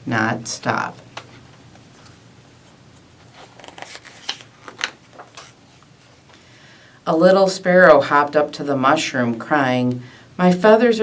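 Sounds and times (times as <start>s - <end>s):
book page turning: 1.2s - 6.3s.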